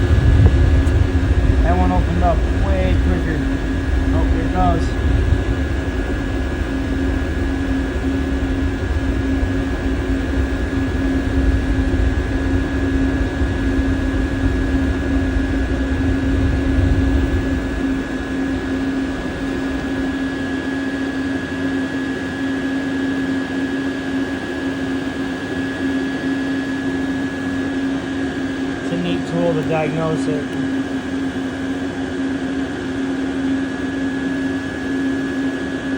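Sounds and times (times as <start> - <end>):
low rumble: 0.0 - 20.5
heater fan hum: 0.0 - 35.9
steady tone: 28.7 - 30.8.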